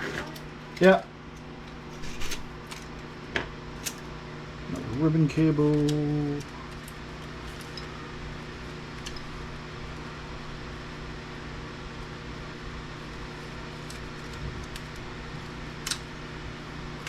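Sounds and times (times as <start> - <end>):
low machine hum: 0.0 - 17.0
light clicks of small parts: 5.6 - 7.9, 15.8 - 16.1.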